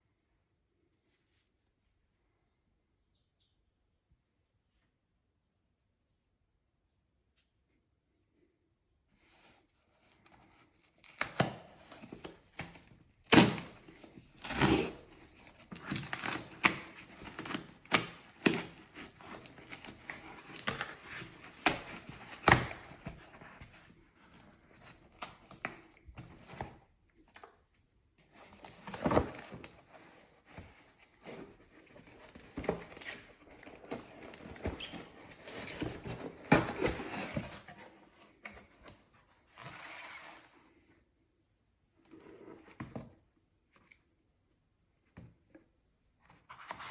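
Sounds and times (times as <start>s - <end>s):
paper and card crinkling: 9.2s - 40.5s.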